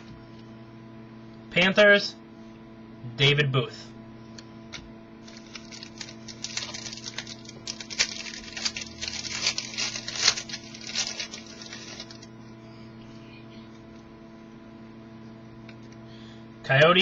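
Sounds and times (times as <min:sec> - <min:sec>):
electrical hum: 0:00.0 - 0:17.0
cards and packaging rustling: 0:05.2 - 0:12.3.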